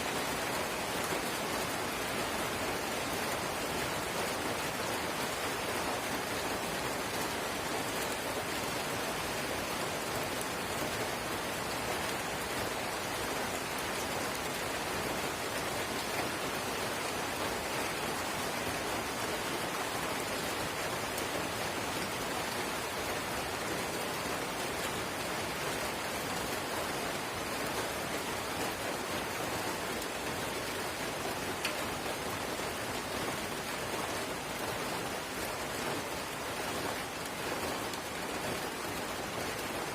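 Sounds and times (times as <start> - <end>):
raindrop ticks: 31.6 - 31.8.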